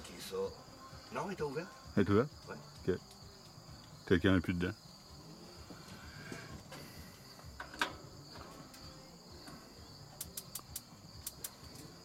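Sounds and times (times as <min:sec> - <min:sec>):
crickets chirping: 0:00.0 - 0:12.0
barbecue spark igniter clicking: 0:10.2 - 0:11.9.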